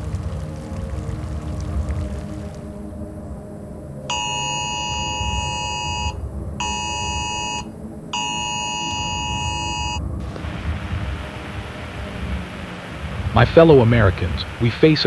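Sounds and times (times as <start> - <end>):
low background rumble: 0.0 - 3.4, 10.2 - 15.0
static hiss: 10.2 - 15.0.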